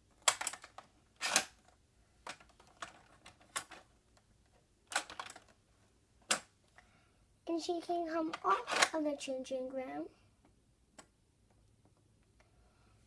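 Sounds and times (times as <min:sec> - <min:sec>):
hard plastic toy clicks: 0:00.2 - 0:01.6.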